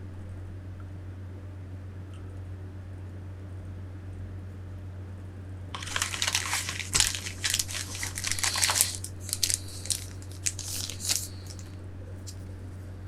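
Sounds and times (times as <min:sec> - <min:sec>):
plastic packaging crinkling: 0:05.8 - 0:12.5.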